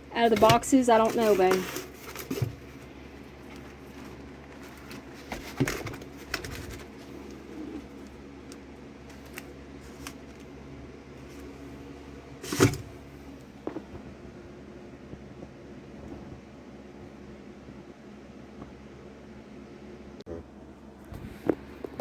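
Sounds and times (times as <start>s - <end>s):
tool boxes and packaging handled: 0.0s - 10.6s, 12.4s - 13.0s
steady low hum: 0.0s - 22.0s.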